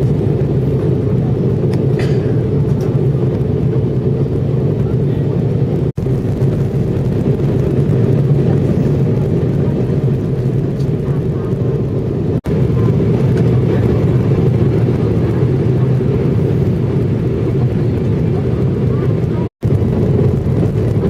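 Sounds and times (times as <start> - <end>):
airliner cabin drone: 0.0 - 21.0.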